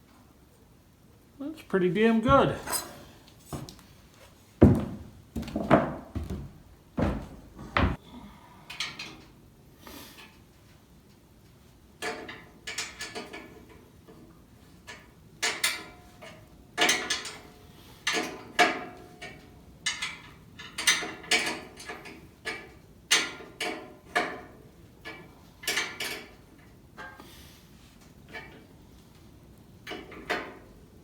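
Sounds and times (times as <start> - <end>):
metal tools clanking: 2.2 - 3.1.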